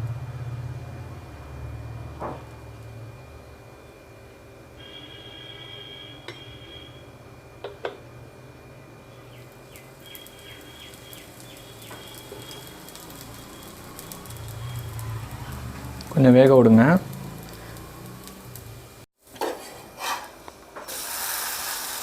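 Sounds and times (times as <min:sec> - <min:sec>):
faint high ringing tones: 0:04.7 - 0:15.1
crackle of frying: 0:09.1 - 0:22.0.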